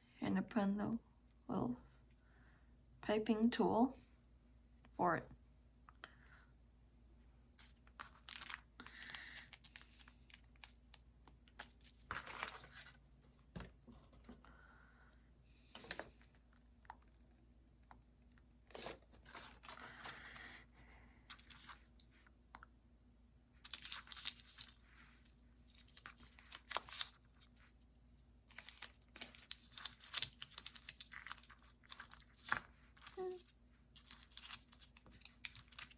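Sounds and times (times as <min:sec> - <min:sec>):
plastic packaging rustling: 0:07.6 - 0:10.8.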